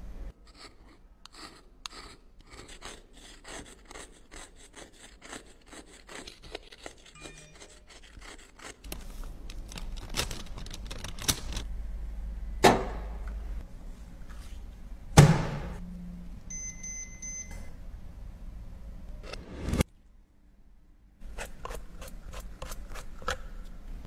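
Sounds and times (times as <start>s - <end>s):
small tool scraping makeup: 0.4s - 9.1s, 21.2s - 23.7s.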